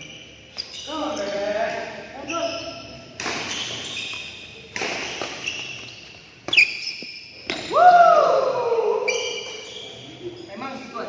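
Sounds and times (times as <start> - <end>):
racket striking shuttlecock: 3.2 - 5.5.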